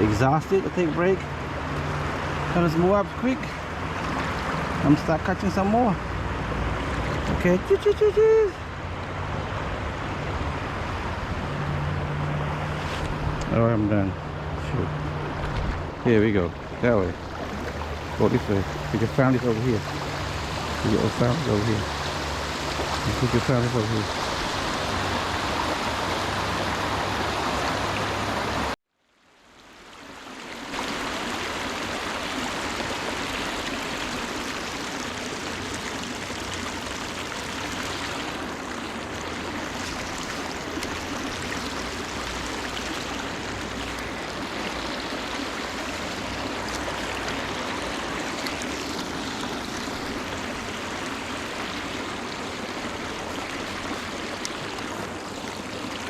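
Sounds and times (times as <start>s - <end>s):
river water rushing: 0.0s - 28.8s, 29.4s - 56.0s.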